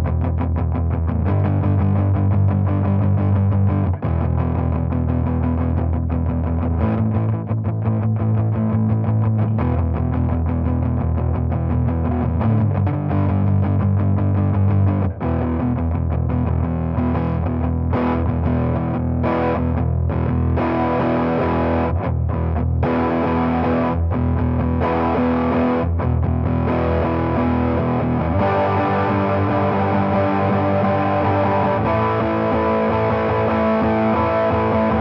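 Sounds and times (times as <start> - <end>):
distorted electric guitar chords: 0.0 - 35.0.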